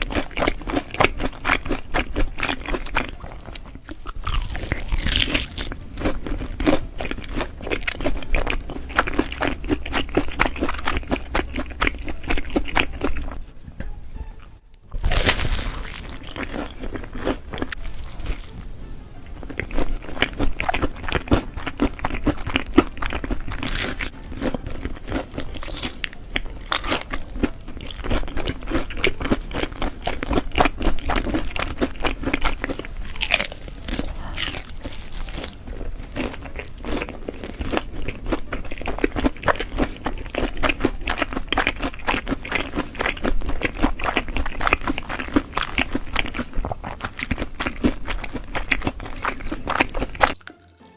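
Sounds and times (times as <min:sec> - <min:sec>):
crunchy bites and chewing: 0:00.0 - 0:13.4, 0:14.9 - 0:50.8.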